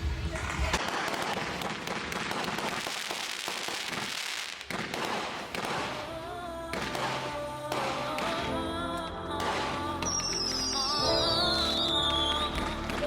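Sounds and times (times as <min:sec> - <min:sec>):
fireworks crackling pops and bangs: 0:00.0 - 0:08.6, 0:09.4 - 0:13.0
music: 0:05.9 - 0:13.0.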